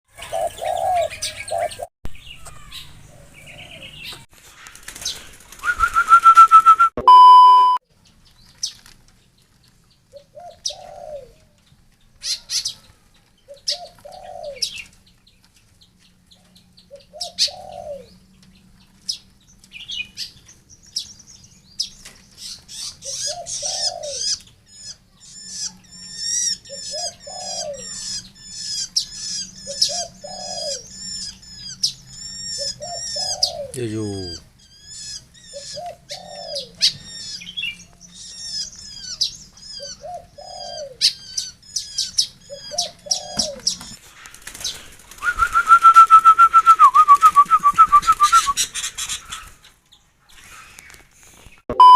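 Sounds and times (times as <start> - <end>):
brief steady beep: 6.9 - 7.8
bird falling call: 38.5 - 44.0.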